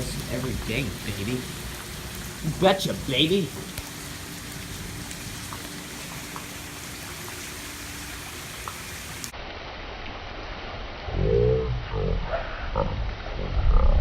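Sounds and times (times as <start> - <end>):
rain falling: 0.0 - 13.5
low rumble: 10.8 - 14.0.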